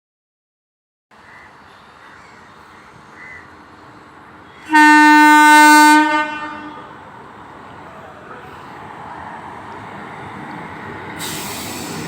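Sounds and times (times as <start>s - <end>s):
train horn blast: 4.6s - 7.0s.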